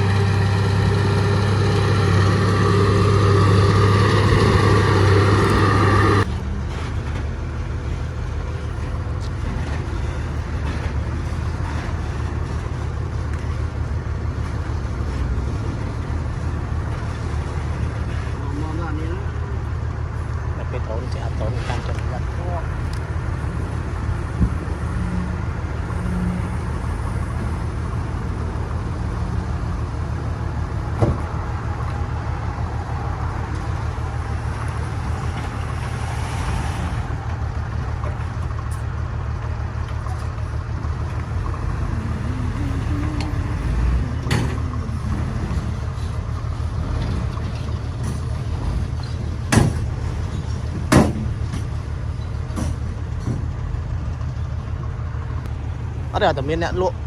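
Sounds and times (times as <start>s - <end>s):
heavy diesel engine running: 0.0s - 57.0s
sharp knocks: 49.5s - 49.9s, 50.8s - 51.7s.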